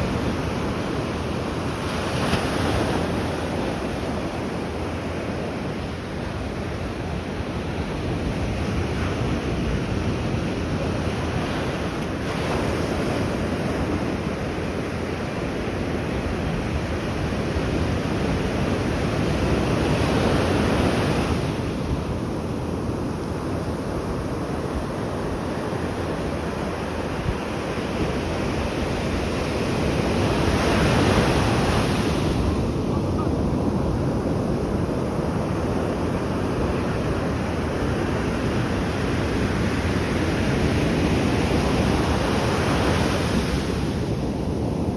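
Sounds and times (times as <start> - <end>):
ocean waves breaking: 23.4 - 44.9.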